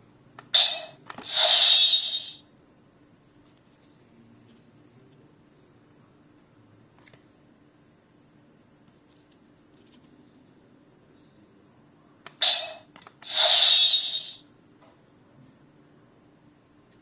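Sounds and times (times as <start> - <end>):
toy electronic sound effects: 0.6 - 2.4, 12.4 - 14.4.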